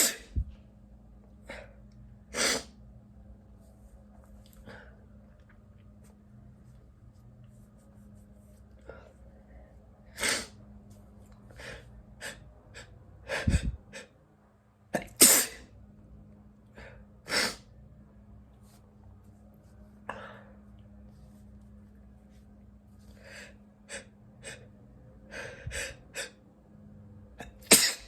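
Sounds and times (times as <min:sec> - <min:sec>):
person sneezing: 0:00.0 - 0:00.4, 0:15.0 - 0:15.7, 0:27.4 - 0:28.0
catches of breath: 0:11.5 - 0:14.1.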